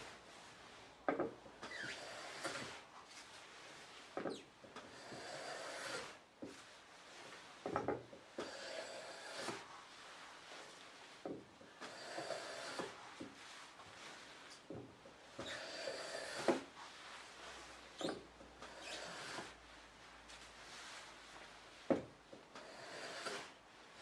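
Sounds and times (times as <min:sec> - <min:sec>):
hand plane cutting wood: 0:04.9 - 0:06.2, 0:08.4 - 0:09.6, 0:11.9 - 0:13.0, 0:15.4 - 0:16.7, 0:22.6 - 0:23.5.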